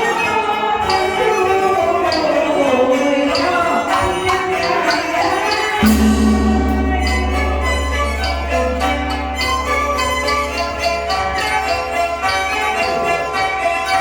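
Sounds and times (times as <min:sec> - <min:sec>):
steady low hum: 0:05.8 - 0:12.3
sharp percussion strikes: 0:05.8 - 0:13.2.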